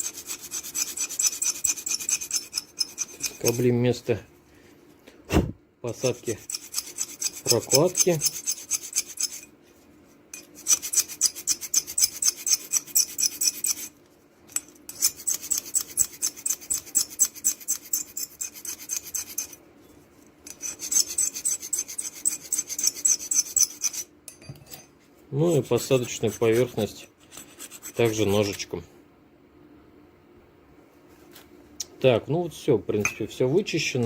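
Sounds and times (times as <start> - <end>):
blade scraping rubber off metal: 0.0 - 3.7, 5.9 - 9.5, 10.4 - 13.9, 14.9 - 19.6, 20.5 - 24.1, 25.5 - 28.7.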